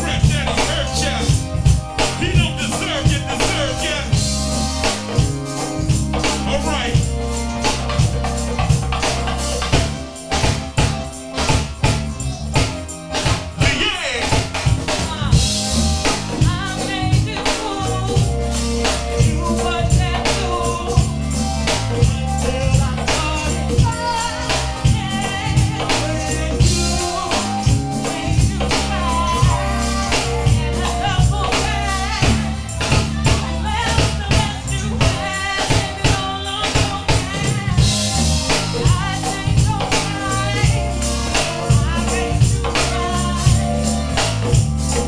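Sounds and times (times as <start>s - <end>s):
wavering sung melodic line: 0.0s - 9.4s
music with drum beat and tambourine: 0.0s - 45.0s.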